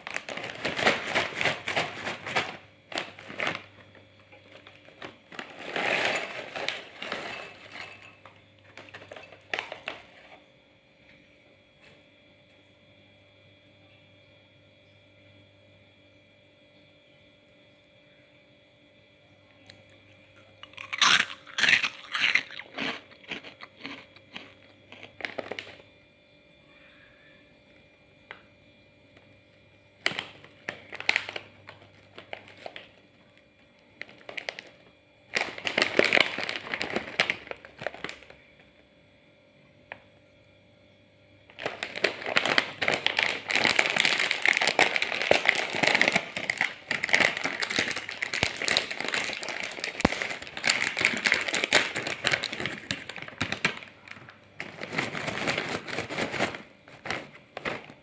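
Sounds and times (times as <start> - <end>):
snack packet crinkling: 0.0 - 10.3, 19.7 - 25.9, 30.0 - 38.6, 41.5 - 58.0
crunching crackers: 0.0 - 10.4, 19.6 - 26.0, 27.6 - 38.9, 41.4 - 58.0.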